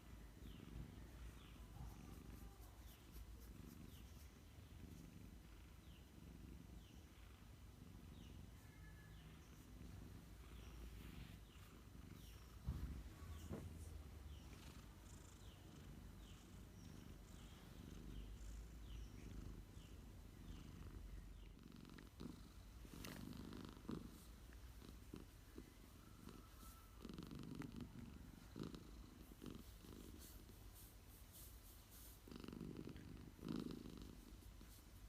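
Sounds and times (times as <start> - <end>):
cat purring: 0.0 - 35.0.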